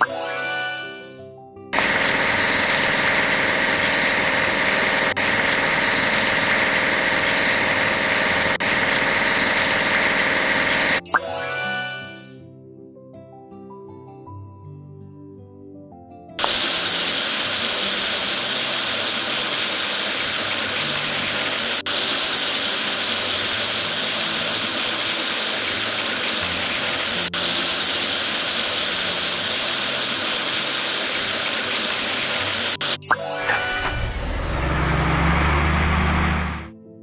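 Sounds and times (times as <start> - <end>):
loud steady hissing rush: 1.8 - 11.0, 16.4 - 33.0.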